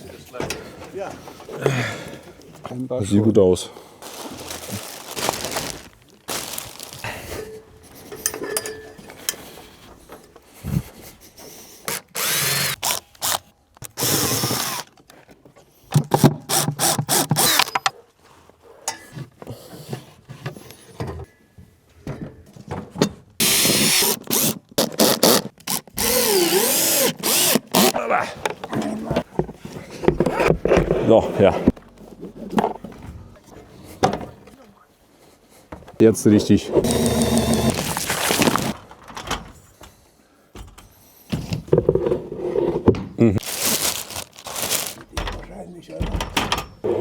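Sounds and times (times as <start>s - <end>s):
handling noises: 3.8s - 16.3s, 35.9s - 40.0s, 43.3s - 45.6s
power drill driving screws: 11.9s - 15.0s, 16.1s - 17.8s, 23.4s - 27.9s, 36.8s - 38.8s.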